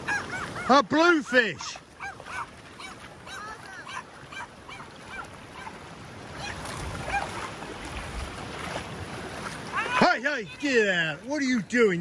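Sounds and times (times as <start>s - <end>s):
dog whining and yipping: 0.0s - 0.7s, 2.0s - 5.7s, 6.3s - 7.5s
wind and surf rumble: 0.0s - 12.0s.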